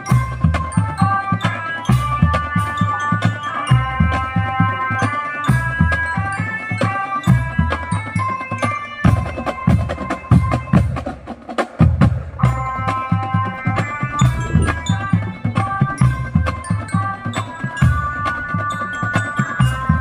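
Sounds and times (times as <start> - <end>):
marching drum band playing: 9.0 - 20.0
held pitched melody line: 13.4 - 19.8
low drum strokes: 14.0 - 16.3.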